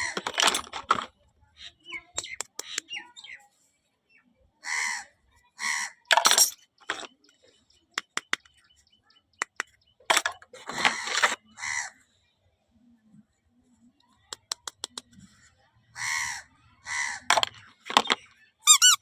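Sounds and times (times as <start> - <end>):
sharp clicks: 14.3 - 15.1.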